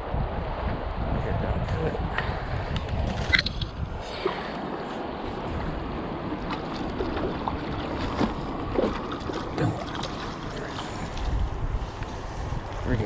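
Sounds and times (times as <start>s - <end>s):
water gurgles and splashes: 2.8s - 13.0s.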